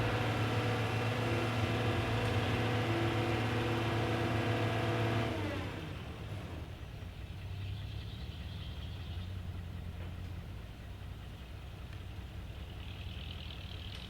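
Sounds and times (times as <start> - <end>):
heavy machine engine idling: 5.9 - 14.0.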